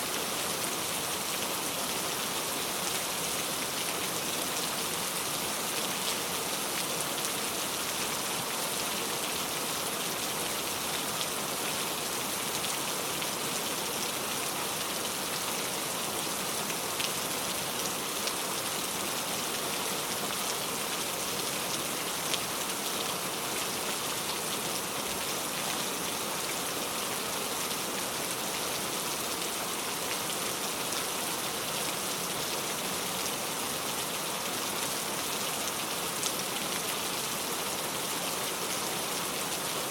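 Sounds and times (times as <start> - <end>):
heavy rain pattering on leaves: 0.1 - 39.9.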